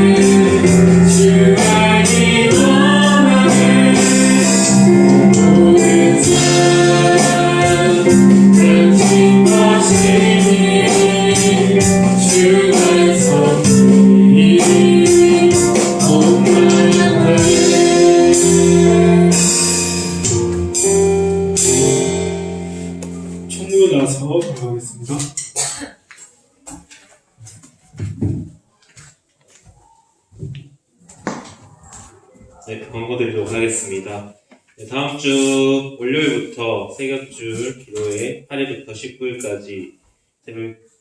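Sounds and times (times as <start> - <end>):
voices singing: 0.0 - 19.8
steady percussion beat: 0.0 - 22.2
band playing worship song: 0.0 - 25.2.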